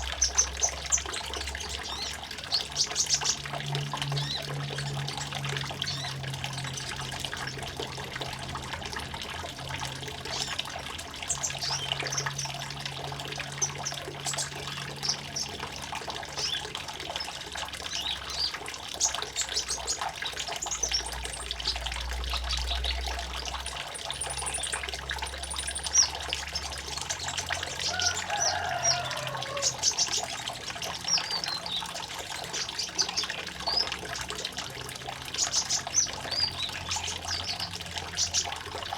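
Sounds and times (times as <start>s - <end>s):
water trickling: 0.0s - 38.9s
small birds chirping: 16.4s - 38.9s.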